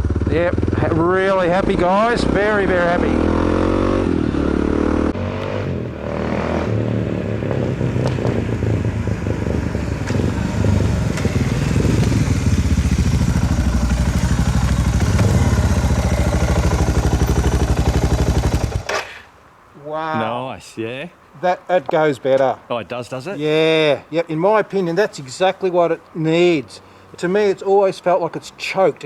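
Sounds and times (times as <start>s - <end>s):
motorcycle engine running: 0.0s - 18.9s.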